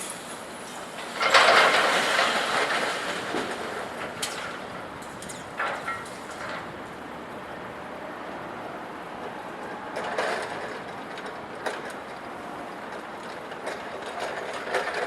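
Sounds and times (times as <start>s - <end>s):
light metallic clanks: 4.2s - 6.7s.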